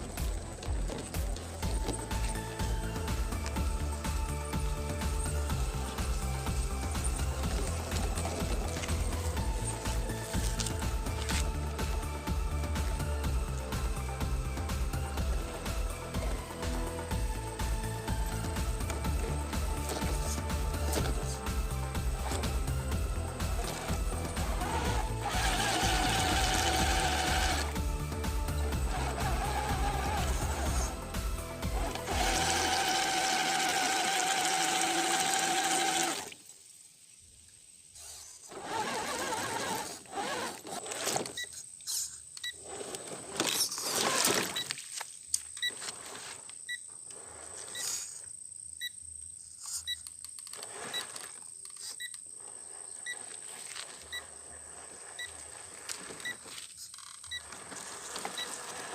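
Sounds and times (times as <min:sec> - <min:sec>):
music: 0:00.0 - 0:36.1
small electric motor whirring: 0:22.1 - 0:36.4, 0:38.0 - 0:44.6, 0:50.4 - 0:58.9.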